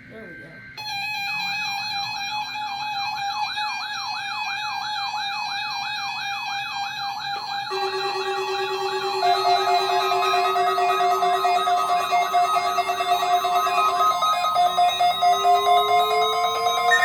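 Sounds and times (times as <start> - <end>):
lower steady tone: 7.4 - 17.0
steady tone: 7.7 - 17.0
tone sweeping upward: 7.7 - 17.0
weather radio alert alarm: 7.7 - 17.0.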